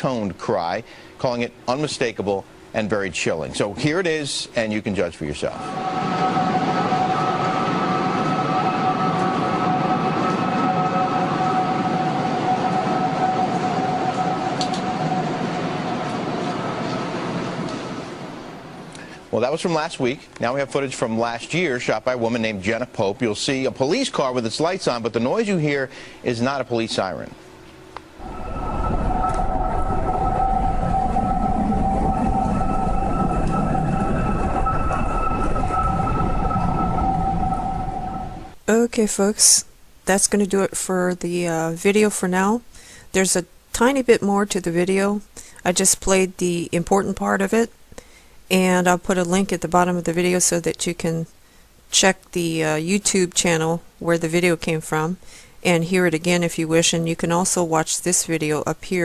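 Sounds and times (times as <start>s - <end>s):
wind whistling in two tones: 5.6s - 18.4s, 28.2s - 38.6s
wind rushing: 5.6s - 18.7s, 28.2s - 38.6s
low rumble of wind: 28.2s - 38.6s.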